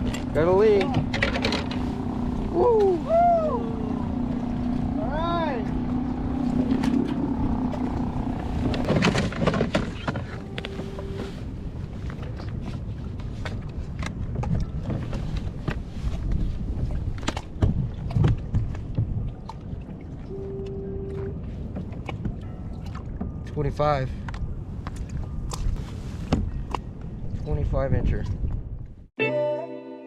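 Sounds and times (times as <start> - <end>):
knocks and clatter on plastic kayak: 0.0 - 1.9, 6.4 - 23.6, 24.2 - 27.4
wind and water rumble: 0.0 - 29.2
short steady beep: 20.3 - 21.3.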